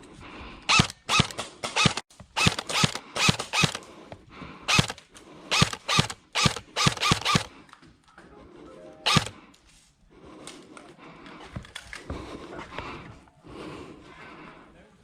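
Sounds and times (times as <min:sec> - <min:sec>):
airsoft rifle shots: 0:00.7 - 0:03.9, 0:04.7 - 0:07.5, 0:09.1 - 0:09.4.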